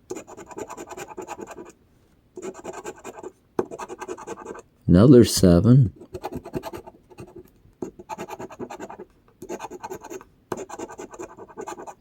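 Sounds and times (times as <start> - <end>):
scratching lottery ticket: 8.0 - 12.0.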